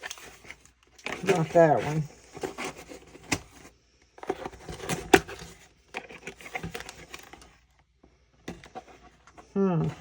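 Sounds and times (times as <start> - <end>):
packaging rustle: 0.0 - 7.8.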